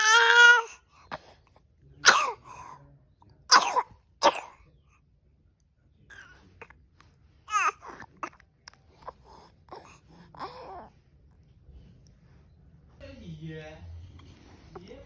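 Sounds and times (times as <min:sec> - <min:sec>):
young child coughing: 0:02.0 - 0:02.6, 0:03.5 - 0:04.6.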